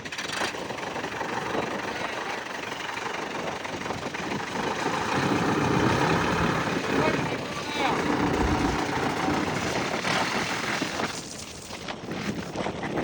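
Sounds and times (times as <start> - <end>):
diesel engine running: 8.0 - 9.3.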